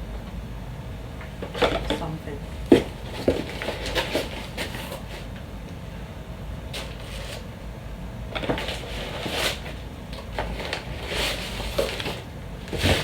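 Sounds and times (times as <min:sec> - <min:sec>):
packaging rustling and scraping: 0:02.7 - 0:05.4, 0:06.7 - 0:07.6, 0:08.3 - 0:13.0.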